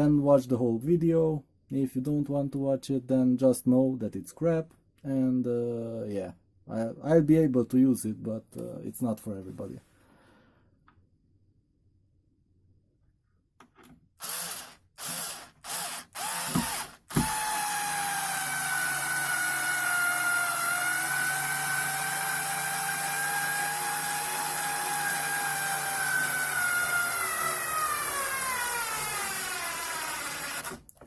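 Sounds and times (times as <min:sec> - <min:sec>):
electric drill whining: 0:14.2 - 0:31.0.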